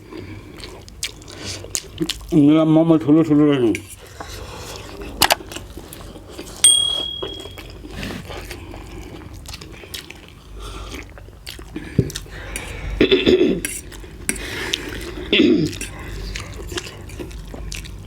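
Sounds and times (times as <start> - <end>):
chewing and biting food: 0.0 - 2.5, 7.5 - 13.0, 13.6 - 18.0
sharp high clink: 6.6 - 7.7.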